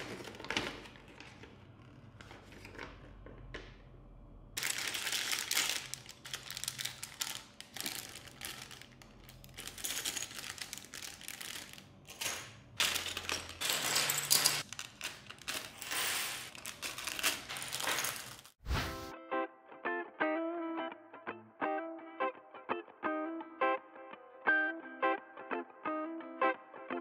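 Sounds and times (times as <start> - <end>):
plastic packaging crinkling: 0.0 - 2.8, 4.6 - 13.9, 14.6 - 18.6.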